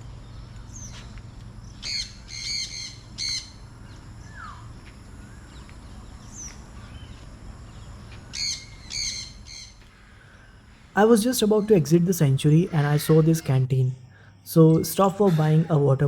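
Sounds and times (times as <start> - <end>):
faint bird chirps: 0.0 - 16.0
parrots screeching: 1.8 - 3.5, 8.3 - 9.7, 12.5 - 13.7.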